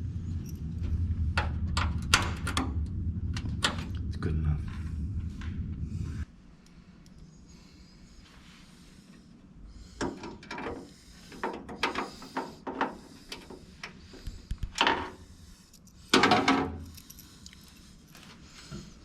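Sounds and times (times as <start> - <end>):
tools and hardware clattering: 15.9 - 17.6.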